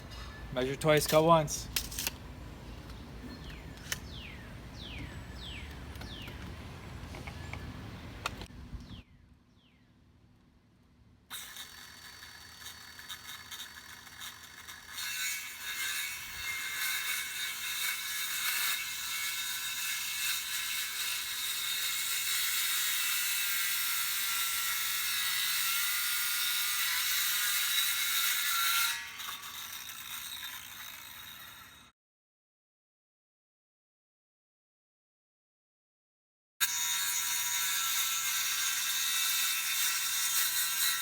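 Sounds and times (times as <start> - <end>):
power saw cutting wood: 11.3 - 31.9, 36.6 - 41.0.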